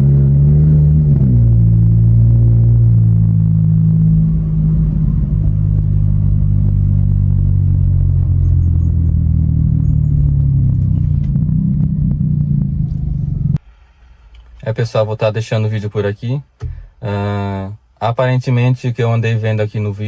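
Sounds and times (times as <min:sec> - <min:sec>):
car engine droning: 0:00.0 - 0:14.5.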